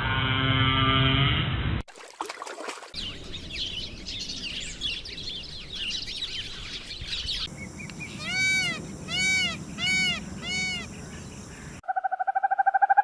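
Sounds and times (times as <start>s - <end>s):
flock of small birds chirping: 3.0s - 11.8s.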